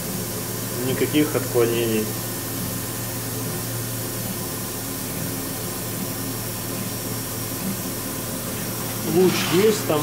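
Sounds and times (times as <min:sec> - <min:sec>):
laser cutter and chiller humming: 0:00.0 - 0:10.0.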